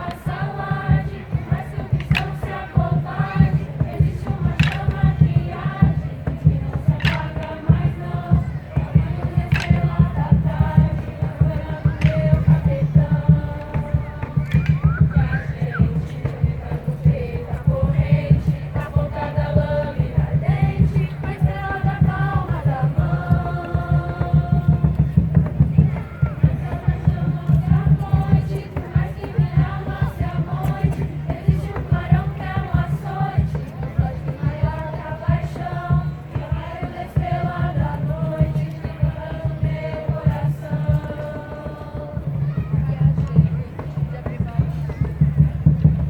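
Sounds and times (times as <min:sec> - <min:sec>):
group singing in unison: 0:00.0 - 0:43.4.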